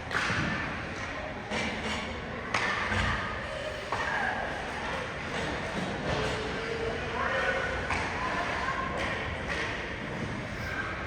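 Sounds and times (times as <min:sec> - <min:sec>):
knocks and thuds in ice rink: 0:00.0 - 0:03.3.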